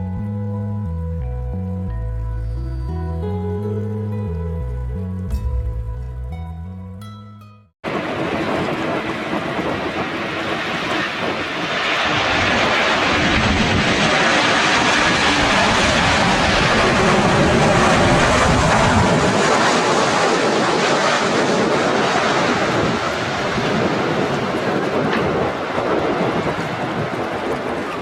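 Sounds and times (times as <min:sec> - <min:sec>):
airliner engine roar: 0:07.8 - 0:28.0.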